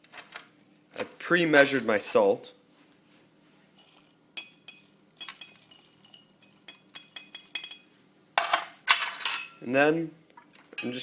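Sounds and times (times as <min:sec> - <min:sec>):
utensil clinking on glass jar: 0:03.8 - 0:07.9.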